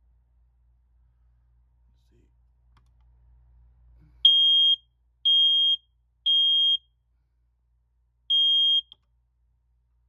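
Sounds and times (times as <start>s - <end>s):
smoke detector beeping: 8.3s - 8.9s.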